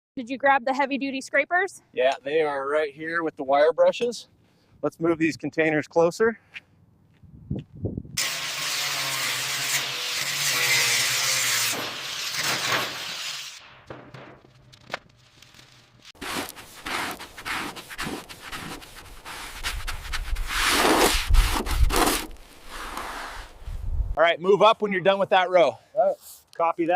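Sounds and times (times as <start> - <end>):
hand scraping: 15.5 - 23.9
rapid wire-brush rubbing: 16.2 - 22.9.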